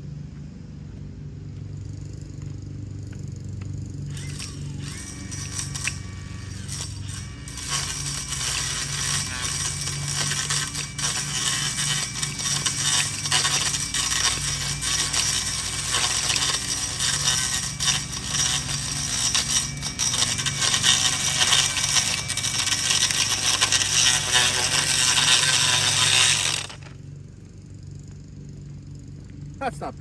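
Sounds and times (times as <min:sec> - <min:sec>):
lawn edger cutting: 0:04.1 - 0:27.0.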